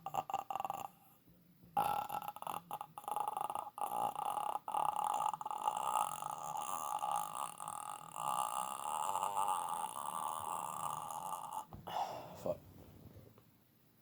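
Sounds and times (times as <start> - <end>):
person imitating croaking death rattle: 0.0 - 1.1, 1.8 - 11.8.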